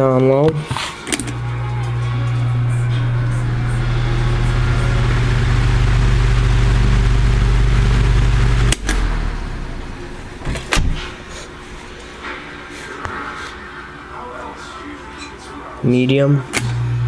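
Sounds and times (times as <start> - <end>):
fan air noise: 0.0 - 17.0
table fan motor hum: 1.1 - 10.5, 16.6 - 17.0
fan switch clicking: 8.7 - 9.1.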